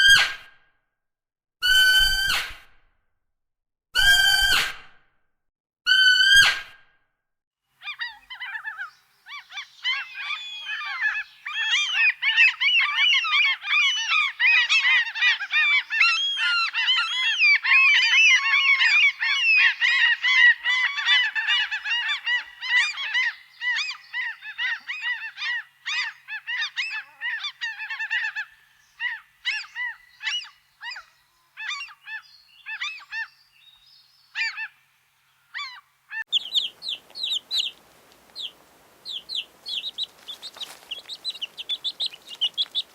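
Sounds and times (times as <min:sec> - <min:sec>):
geese honking: 0:36.2 - 0:42.9.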